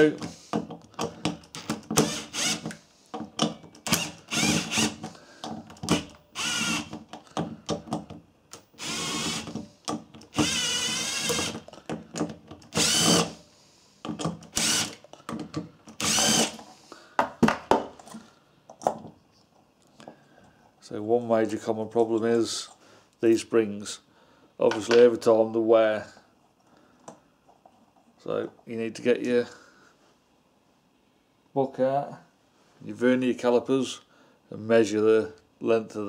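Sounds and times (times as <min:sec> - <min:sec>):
power drill motor whine: 0:02.0 - 0:02.8, 0:03.8 - 0:05.0, 0:05.9 - 0:06.9, 0:08.8 - 0:09.6, 0:10.3 - 0:11.6, 0:12.7 - 0:13.4, 0:14.5 - 0:15.0, 0:16.0 - 0:16.6.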